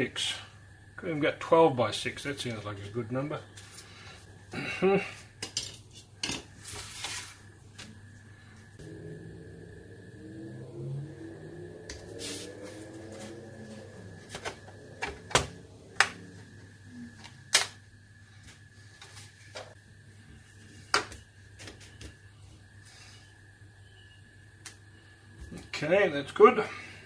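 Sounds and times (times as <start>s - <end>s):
faint high whine: 0.0s - 5.4s, 6.3s - 27.0s.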